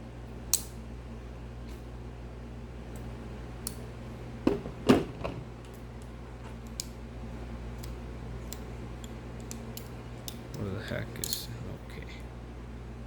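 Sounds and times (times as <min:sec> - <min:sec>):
multi-tool blade snaps: 0:00.5 - 0:00.8.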